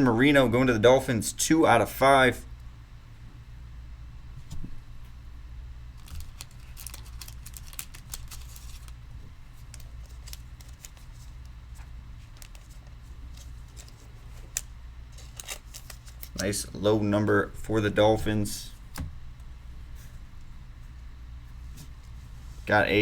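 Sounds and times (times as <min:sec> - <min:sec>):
low room hum: 0:00.0 - 0:23.0
plastic card sleeves crackling: 0:06.0 - 0:16.7.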